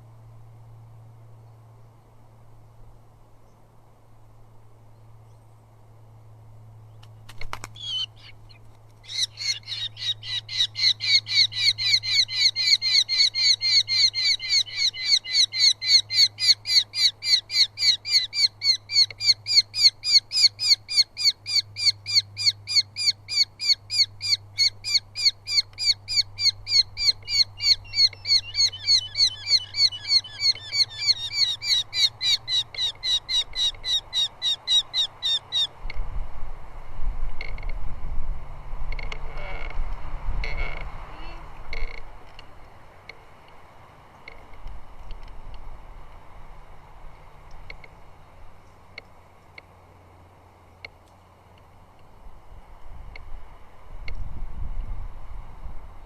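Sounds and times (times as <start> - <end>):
falcon calling sharp notes: 9.1 - 35.7.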